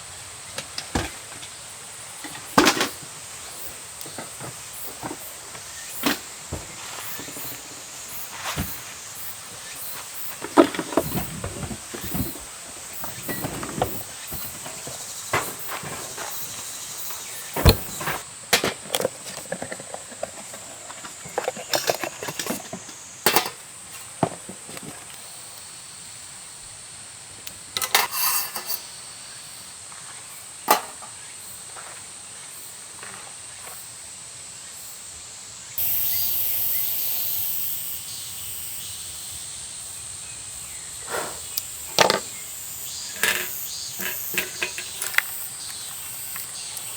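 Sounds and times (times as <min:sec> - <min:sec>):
high insect hum: 0:00.0 - 0:46.9
camping gear clattering: 0:00.5 - 0:25.1, 0:27.8 - 0:28.8, 0:30.7 - 0:31.1, 0:41.8 - 0:46.9
loud hissing rush: 0:41.0 - 0:45.0.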